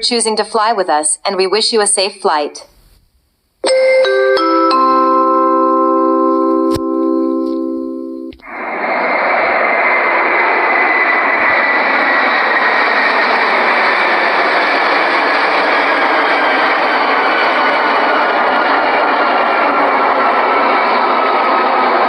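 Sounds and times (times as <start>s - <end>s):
faint whine falling in pitch: 3.6s - 15.2s
aircraft engine roar: 3.7s - 22.0s.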